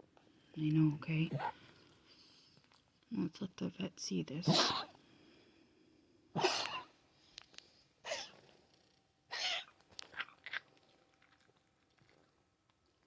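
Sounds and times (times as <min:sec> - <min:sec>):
cat coughing: 0:04.5 - 0:05.0, 0:06.4 - 0:07.0, 0:08.0 - 0:08.4, 0:09.3 - 0:09.7.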